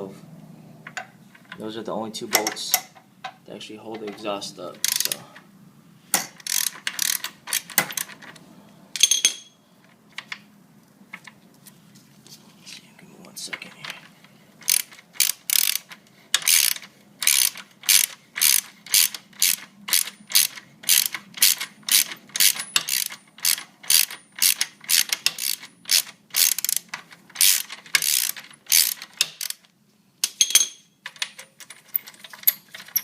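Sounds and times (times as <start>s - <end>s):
ratchet wrench clicking: 4.8s - 5.2s, 6.2s - 8.1s, 14.6s - 29.6s.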